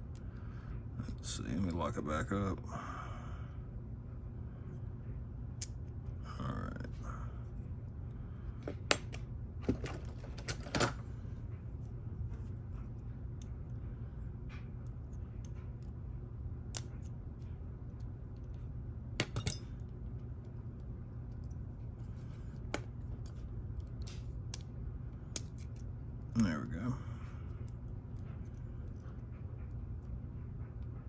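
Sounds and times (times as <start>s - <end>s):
low hum: 0.0s - 31.0s
metallic clicks of lock parts: 19.2s - 19.9s, 22.5s - 26.5s.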